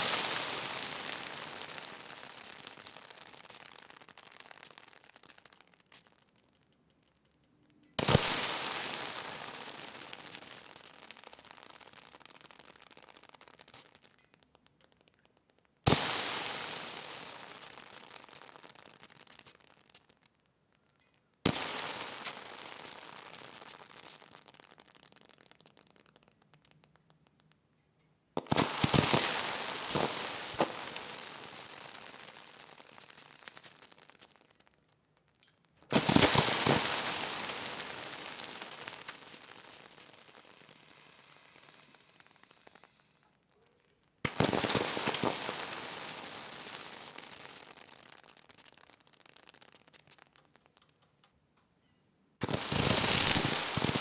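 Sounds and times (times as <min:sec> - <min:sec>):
water sizzling: 0:00.0 - 0:06.0, 0:08.0 - 0:14.1, 0:15.9 - 0:20.0, 0:21.5 - 0:24.8, 0:28.4 - 0:34.6, 0:35.9 - 0:43.2, 0:44.2 - 0:50.4, 0:52.4 - 0:54.0.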